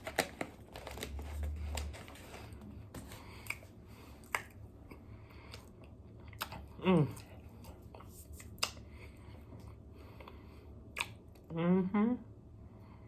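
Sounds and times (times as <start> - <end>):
wet mouth clicks while chewing: 4.2 - 4.6, 7.2 - 8.8, 10.9 - 11.2.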